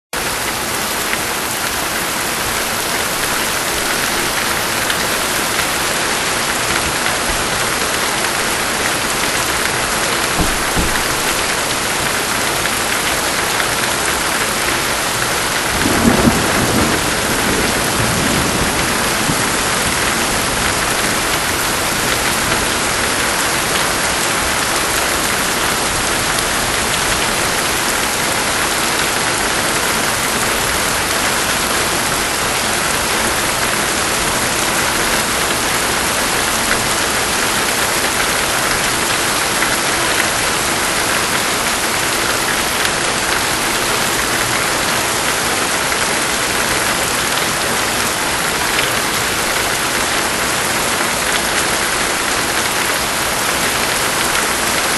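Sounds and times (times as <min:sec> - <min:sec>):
steady rain falling: 0:00.2 - 0:54.9
thunder rumbling: 0:00.3 - 0:12.4, 0:15.6 - 0:22.8.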